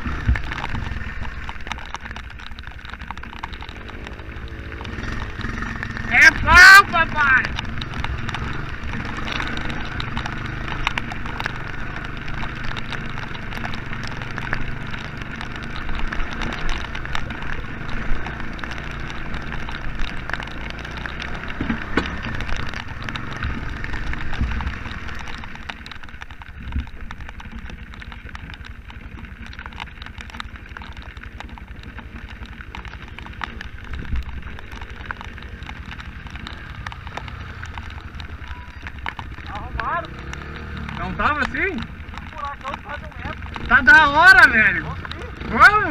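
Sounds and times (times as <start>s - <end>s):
atv engine running: 0.0s - 45.9s
rain ticking: 0.0s - 45.9s.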